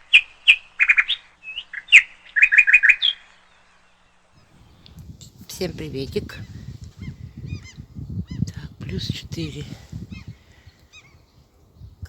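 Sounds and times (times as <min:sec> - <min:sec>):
small bird chirping: 0:00.0 - 0:03.8, 0:06.4 - 0:08.6, 0:10.0 - 0:12.0.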